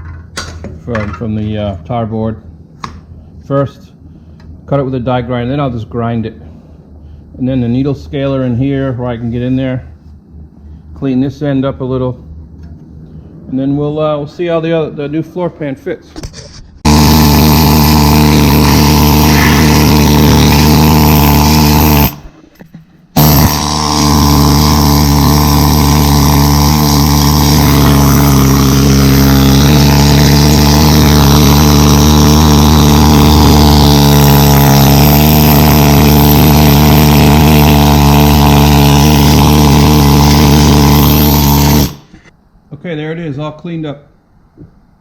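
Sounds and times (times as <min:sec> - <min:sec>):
power tool grinding steel: 0:16.8 - 0:22.4, 0:23.2 - 0:42.3.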